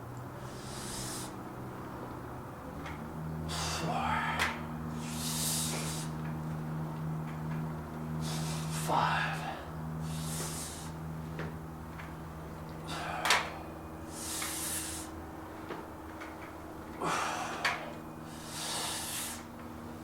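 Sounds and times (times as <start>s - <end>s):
steady low hum: 0.0s - 20.0s
hissing breaths: 0.3s - 1.9s, 3.5s - 6.2s, 8.1s - 11.1s, 12.8s - 15.3s, 17.0s - 19.6s.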